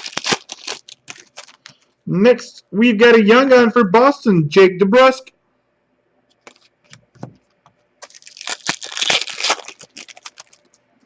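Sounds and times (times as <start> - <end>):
card pack wrapper crackling: 0.0 - 1.8, 6.5 - 6.7, 8.0 - 10.8.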